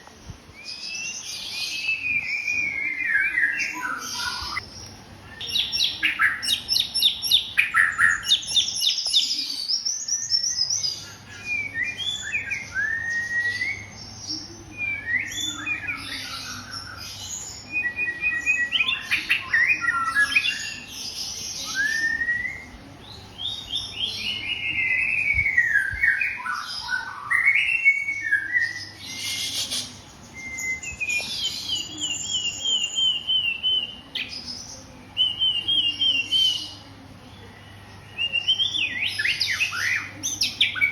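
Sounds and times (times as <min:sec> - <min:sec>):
bird singing varied song: 0:00.0 - 0:40.9.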